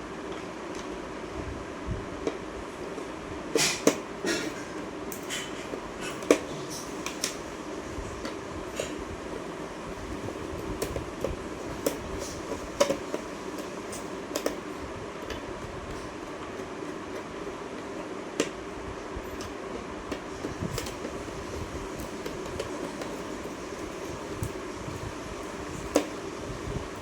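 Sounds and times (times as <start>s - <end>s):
steady background hum: 0.0s - 27.0s
small clicks and taps: 10.8s - 14.6s.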